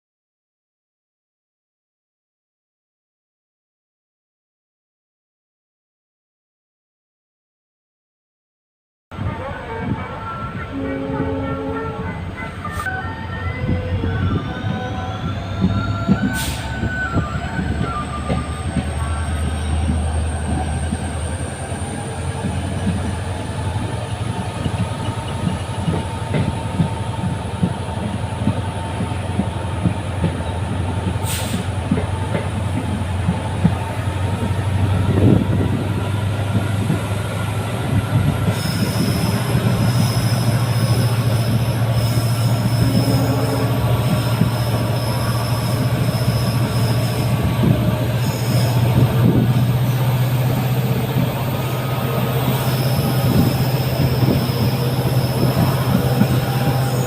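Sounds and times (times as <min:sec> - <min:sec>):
diesel locomotive engine hum: 0:09.1 - 0:57.0
train wheels clattering on rails: 0:15.6 - 0:43.0, 0:43.9 - 0:57.0.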